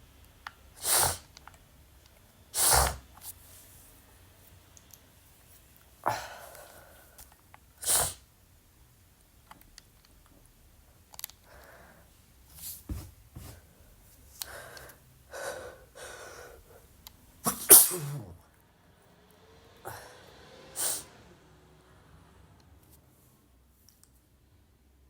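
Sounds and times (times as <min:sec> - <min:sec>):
man sneezing: 0:17.4 - 0:18.4.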